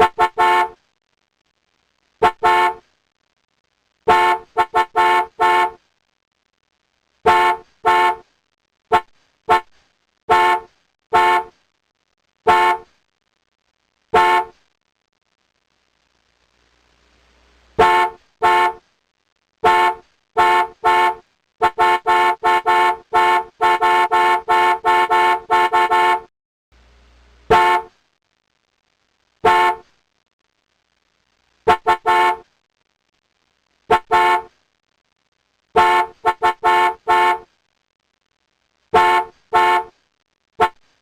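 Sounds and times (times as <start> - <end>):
car horn honking: 0.0 - 0.8, 2.2 - 2.8, 4.1 - 5.8, 7.3 - 8.2, 8.9 - 9.7, 10.3 - 11.5, 12.5 - 12.8, 14.2 - 14.5, 17.8 - 18.8, 19.6 - 26.3, 27.5 - 27.9, 29.4 - 29.8, 31.7 - 32.4, 33.9 - 34.5, 35.8 - 37.4, 38.9 - 39.9.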